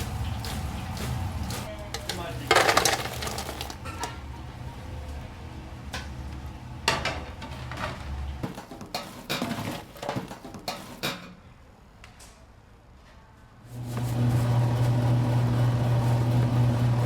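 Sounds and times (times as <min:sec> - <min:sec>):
dishes and utensils clattering: 0:00.0 - 0:04.3, 0:06.8 - 0:11.4.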